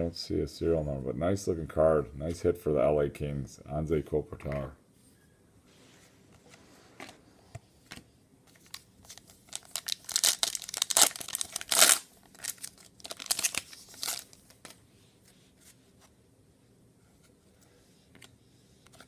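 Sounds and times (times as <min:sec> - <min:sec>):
wrapper crinkling: 0:08.6 - 0:14.8.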